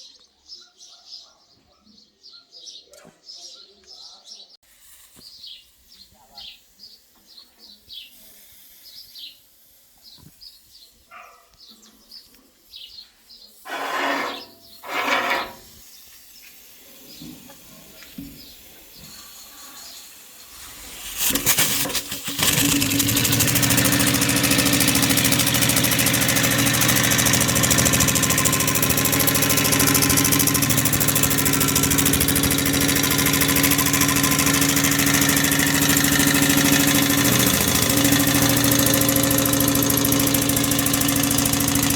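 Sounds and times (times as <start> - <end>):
small steam engine running: 13.7 - 15.6, 20.4 - 41.9.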